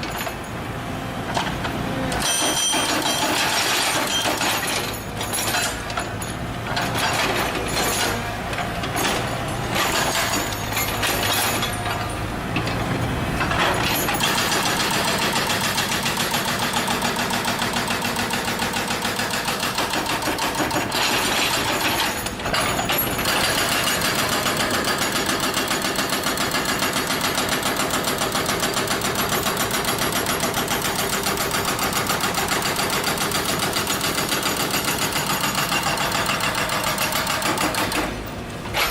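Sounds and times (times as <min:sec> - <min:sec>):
hydraulic breaker hammering: 0:01.3 - 0:38.9
machine engine running: 0:03.5 - 0:17.2.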